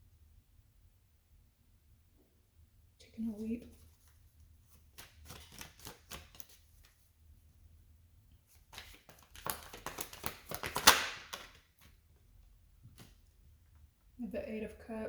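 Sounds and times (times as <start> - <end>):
cards being shuffled: 3.7 - 7.0, 8.5 - 12.0
card riffling clicks: 8.8 - 11.6.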